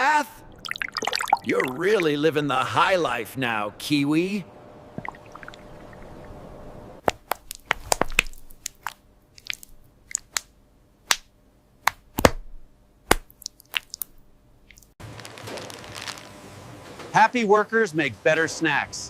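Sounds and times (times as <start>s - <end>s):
sharp crunches and clicks: 7.0s - 10.5s.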